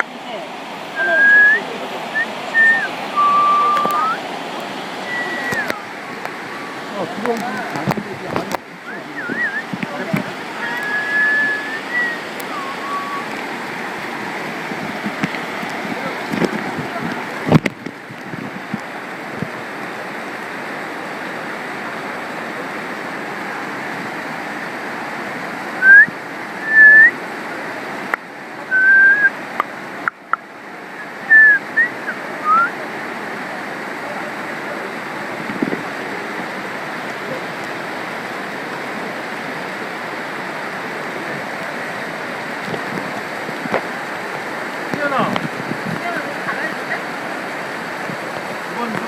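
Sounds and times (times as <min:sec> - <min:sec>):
mountain stream running: 0:00.0 - 0:49.0
whistled chirps: 0:00.9 - 0:04.2, 0:05.0 - 0:05.8, 0:08.8 - 0:09.7, 0:10.6 - 0:13.3, 0:25.8 - 0:27.2, 0:28.7 - 0:29.4, 0:30.9 - 0:32.8.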